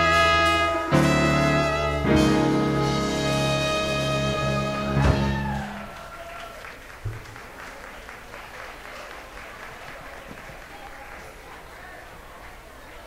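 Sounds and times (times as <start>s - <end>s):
dance band horns holding a chord: 0.0s - 5.9s
audience applauding: 4.4s - 13.0s.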